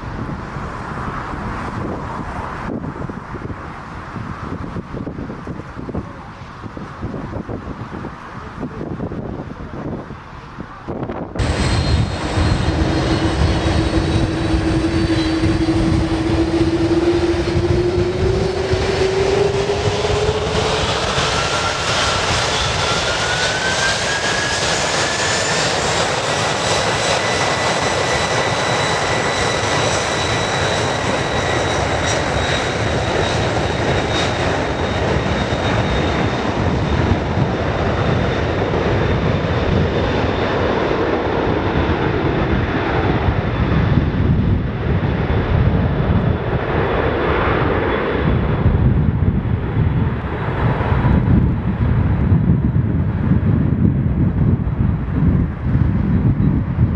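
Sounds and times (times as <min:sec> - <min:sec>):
jet engines spooling up: 0:10.9 - 0:49.1.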